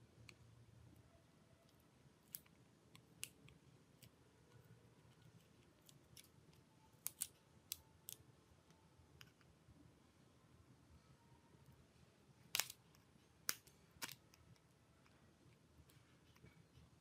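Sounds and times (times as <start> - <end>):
small tools and plastic parts clicking: 1.6 - 8.2.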